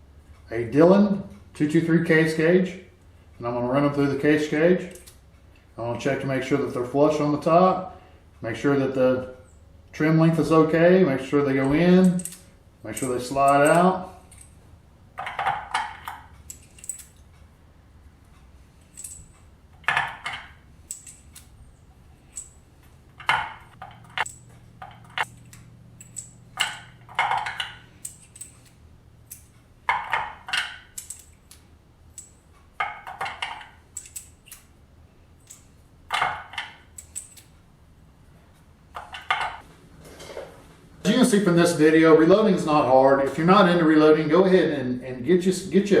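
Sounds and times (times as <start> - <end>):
brass cartridges clinking in metal gauge: 11.6 - 14.6, 15.2 - 17.3, 18.8 - 31.5, 32.1 - 34.7, 35.4 - 37.5.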